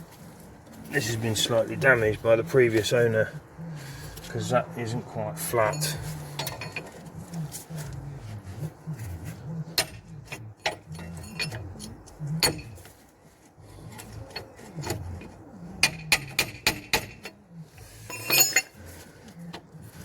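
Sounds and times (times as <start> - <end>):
small parts and tools clicking: 18.0 - 19.6
ringing metallic clinks: 18.1 - 18.7.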